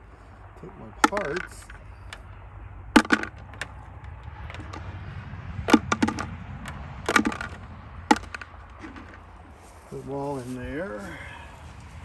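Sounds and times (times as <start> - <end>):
metal fasteners clinking: 3.0 - 4.9, 5.7 - 9.3.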